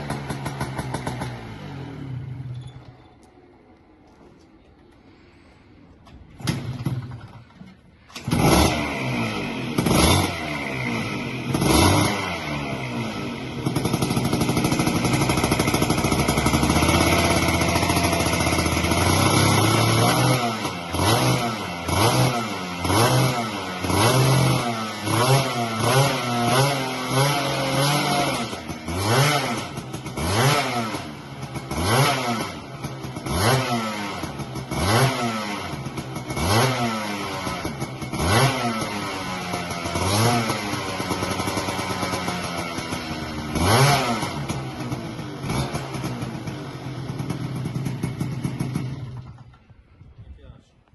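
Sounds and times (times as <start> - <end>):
scooter engine starting and revving: 0.0 - 3.3, 6.2 - 50.0.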